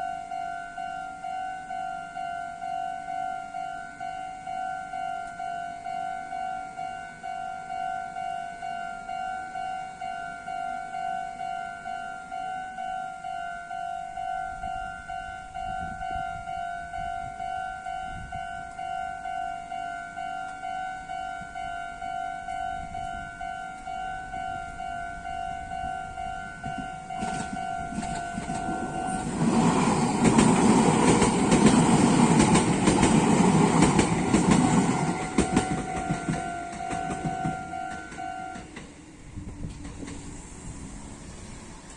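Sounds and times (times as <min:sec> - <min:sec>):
railroad crossing bell dinging: 0:00.0 - 0:40.0
train wheels clattering on rails: 0:26.6 - 0:41.0.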